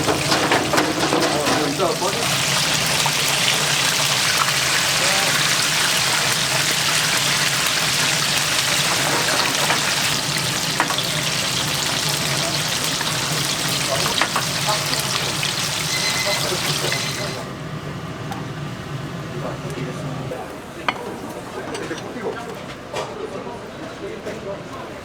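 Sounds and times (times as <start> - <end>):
deep-frying sizzle: 0.0 - 19.7.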